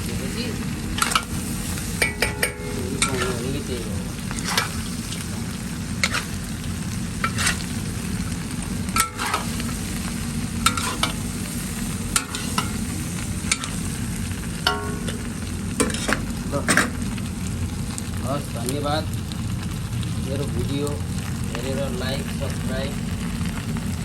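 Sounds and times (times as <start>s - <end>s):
meat sizzling in a pan: 0.0s - 24.0s
metal spatula scraping a pan: 2.0s - 3.7s, 4.3s - 5.0s, 6.0s - 6.5s, 7.2s - 7.9s, 8.9s - 9.6s, 10.6s - 11.3s, 12.1s - 12.8s, 13.5s - 13.8s, 14.7s - 17.0s.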